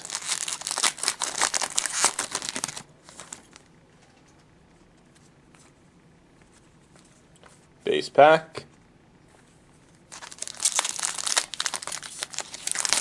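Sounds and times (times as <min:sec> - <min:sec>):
foil wrapper crinkling and tearing: 0:00.0 - 0:03.7, 0:10.1 - 0:13.0.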